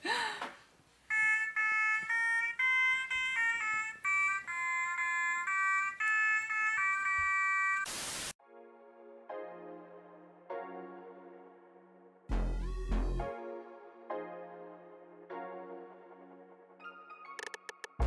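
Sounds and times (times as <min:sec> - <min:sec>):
high-pitched electronic tune: 0:01.1 - 0:08.0
burst of hiss: 0:07.9 - 0:08.4.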